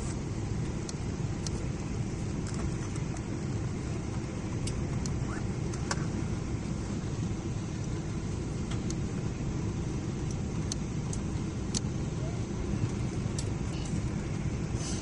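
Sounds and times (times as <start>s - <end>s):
airliner cabin rumble: 0.0s - 15.0s.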